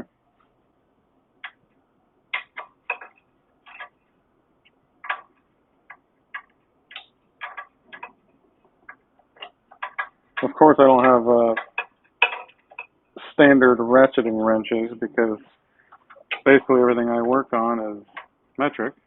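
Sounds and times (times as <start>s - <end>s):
hand tools clicking and tapping: 2.3s - 4.0s, 5.0s - 13.0s, 15.9s - 18.4s.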